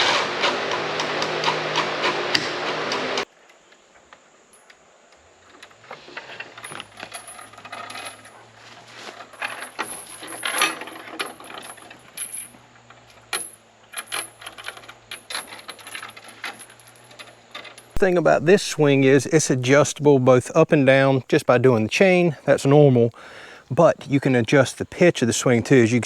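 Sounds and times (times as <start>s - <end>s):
metal chain clinking: 6.4s - 20.0s
low steady hum: 17.9s - 23.3s.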